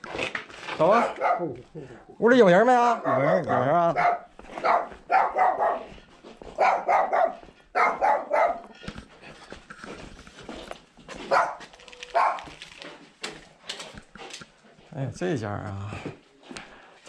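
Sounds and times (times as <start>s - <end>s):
dog barking: 0.9s - 1.6s, 2.9s - 8.7s, 11.2s - 12.6s.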